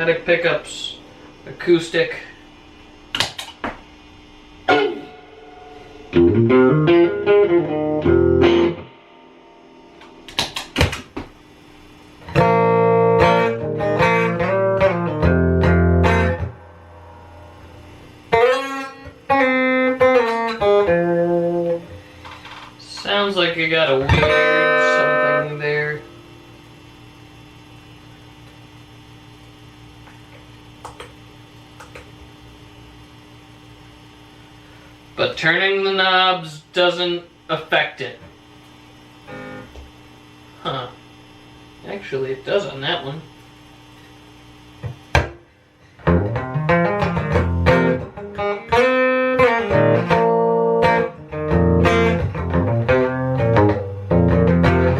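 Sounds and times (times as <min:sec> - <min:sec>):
electric guitar playing: 0:04.6 - 0:10.6, 0:12.2 - 0:26.5, 0:39.2 - 0:40.0, 0:44.8 - 0:54.9.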